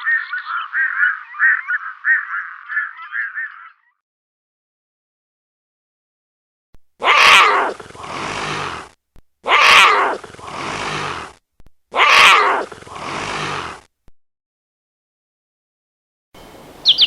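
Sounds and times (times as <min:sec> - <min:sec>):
animal cry: 0:00.0 - 0:03.9, 0:07.0 - 0:13.8.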